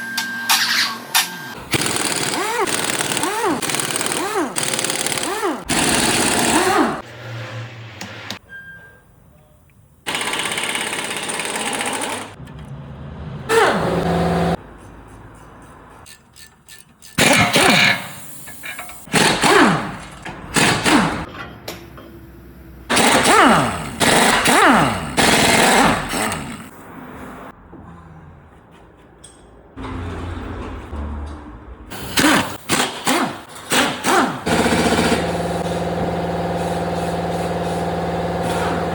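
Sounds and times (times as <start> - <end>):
impact wrench hammering: 1.7 - 7.0, 16.1 - 21.3, 22.9 - 26.7.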